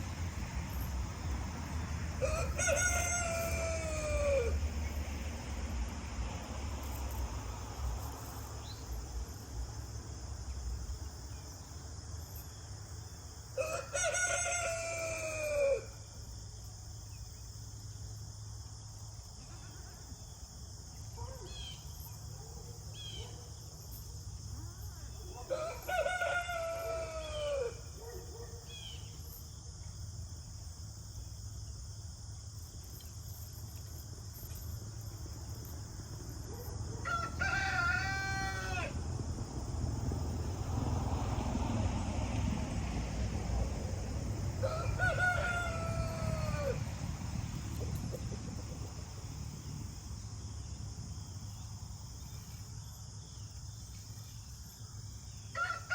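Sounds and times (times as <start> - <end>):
rooster crowing: 2.2 - 4.7, 13.6 - 16.0, 25.3 - 28.0, 36.8 - 39.1, 44.6 - 47.7, 55.5 - 55.9.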